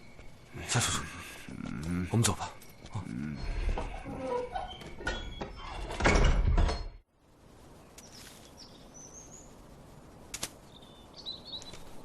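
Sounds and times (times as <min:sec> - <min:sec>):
faint high bird chirps: 0:07.8 - 0:09.6, 0:10.6 - 0:12.0.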